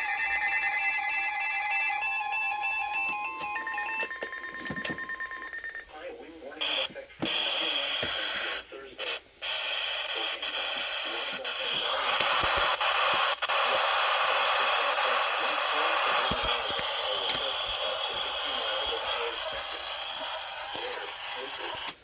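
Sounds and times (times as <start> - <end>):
radio static hiss: 6.1 - 22.0.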